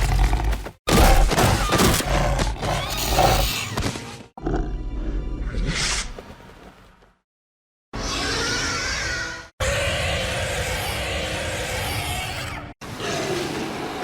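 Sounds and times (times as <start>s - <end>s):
monster roars and growls: 8.0s - 14.0s.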